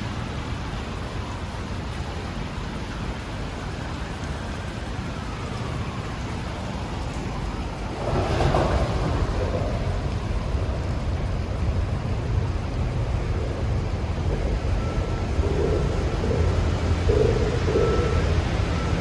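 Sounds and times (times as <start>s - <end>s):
wind buffeting microphone: 7.2s - 19.0s.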